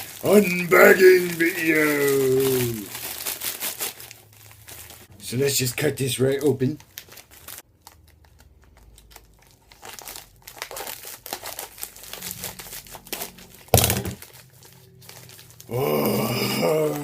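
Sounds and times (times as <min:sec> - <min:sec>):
mailing bag crinkling: 0:00.0 - 0:05.1, 0:06.6 - 0:17.0.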